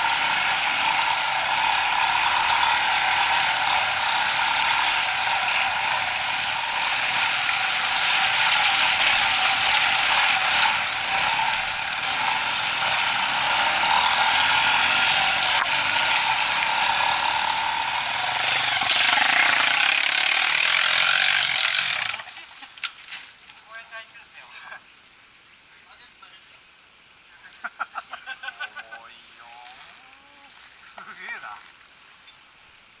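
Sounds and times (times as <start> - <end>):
motorcycle engine running: 0.0 - 22.3.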